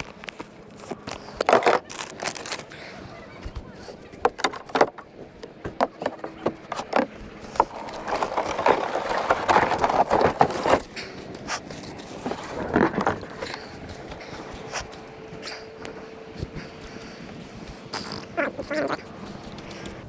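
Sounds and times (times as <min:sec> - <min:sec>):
scraping: 0:00.0 - 0:20.0
knocks and clicks of gear: 0:03.4 - 0:18.3.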